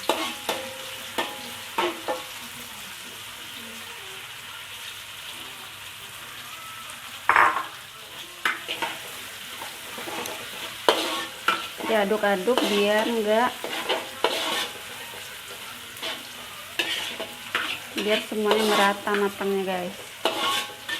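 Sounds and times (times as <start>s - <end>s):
spatula scraping a pan: 0.0s - 2.4s, 7.3s - 20.9s
onions sizzling in oil: 0.0s - 20.9s.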